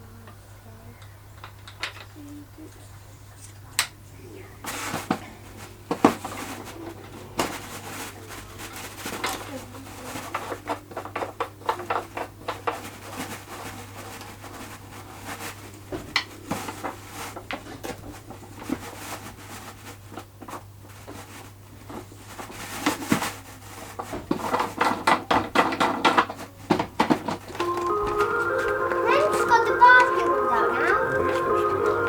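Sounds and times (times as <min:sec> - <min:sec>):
small hard objects clicking and rattling: 0:04.6 - 0:28.2.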